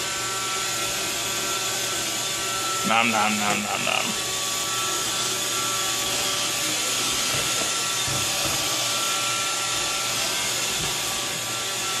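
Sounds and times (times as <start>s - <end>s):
robot vacuum whirring on carpet: 0.0s - 2.8s, 4.2s - 12.0s.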